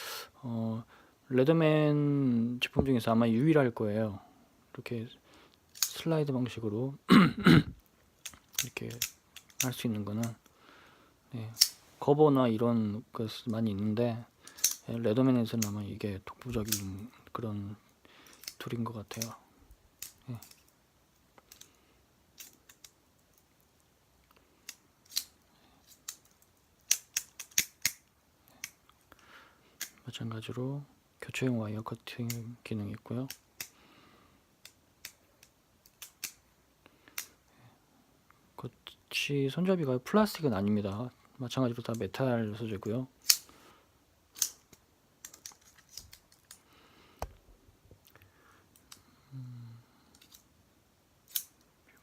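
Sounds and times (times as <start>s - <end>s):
multitool metallic clicks and snaps: 5.5s - 6.0s, 8.2s - 10.5s, 11.5s - 11.8s, 14.5s - 14.9s, 15.5s - 15.8s, 16.5s - 17.0s, 18.2s - 19.4s, 20.0s - 20.8s, 21.4s - 21.8s, 22.4s - 23.5s, 24.2s - 29.2s, 29.8s - 30.0s, 33.2s - 33.8s, 34.6s - 36.4s, 37.0s - 37.4s, 43.2s - 43.5s, 44.3s - 46.6s, 50.1s - 50.5s, 51.2s - 51.7s
multitool metal clicks and taps: 26.9s - 28.0s.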